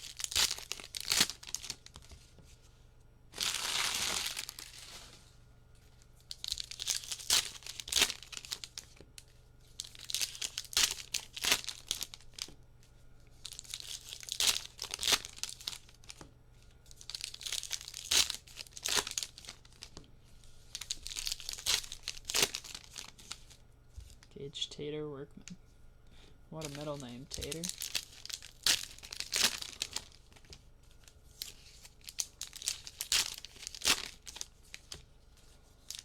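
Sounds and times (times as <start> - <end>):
card pack wrappers crinkling: 0.0 - 2.2, 3.4 - 5.2, 6.2 - 12.5, 13.4 - 16.2, 16.9 - 20.0, 20.6 - 24.3, 26.6 - 35.0, 35.8 - 36.0.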